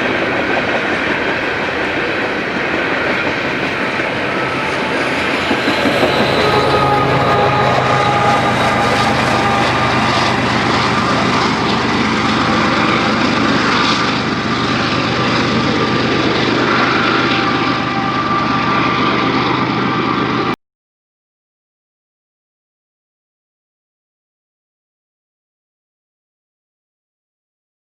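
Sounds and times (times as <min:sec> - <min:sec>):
wheels squealing: 0:00.0 - 0:20.5
freight train rumbling past: 0:00.0 - 0:20.6.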